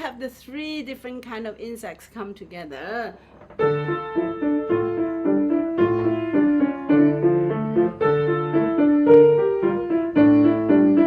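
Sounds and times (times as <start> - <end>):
piano piece: 3.4 - 11.0.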